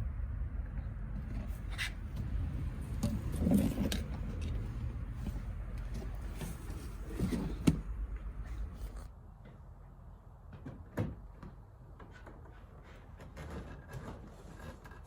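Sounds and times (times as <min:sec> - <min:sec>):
steady low hum: 0:00.0 - 0:09.2
knocks and rustles: 0:01.2 - 0:07.9.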